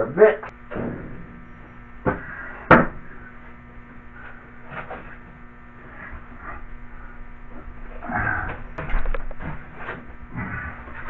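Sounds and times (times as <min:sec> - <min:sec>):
sharp knocks: 0:02.0 - 0:03.1.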